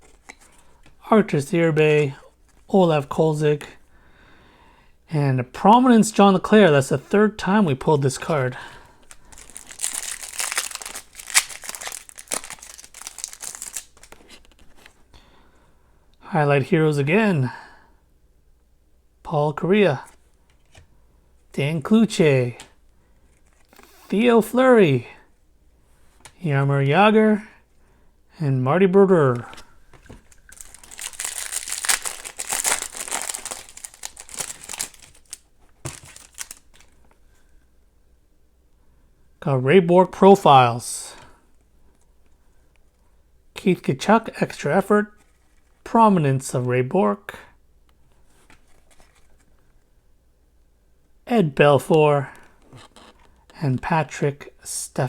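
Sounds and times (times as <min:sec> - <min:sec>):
plastic wrapper crinkling: 0:08.0 - 0:14.9, 0:29.3 - 0:37.2.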